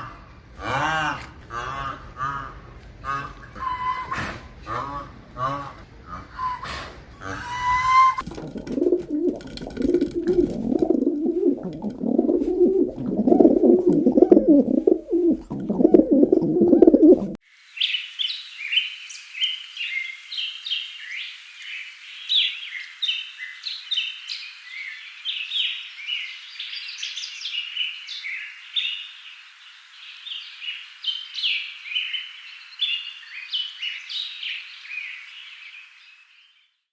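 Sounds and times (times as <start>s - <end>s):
low cooing calls: 7.4s - 17.4s
birds chirping: 8.2s - 17.4s.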